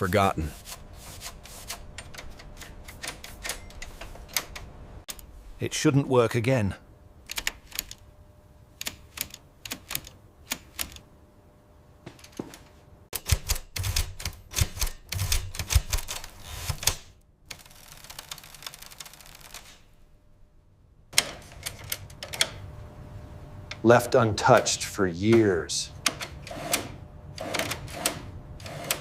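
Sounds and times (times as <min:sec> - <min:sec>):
typewriter keys clacking: 0:13.2 - 0:19.7.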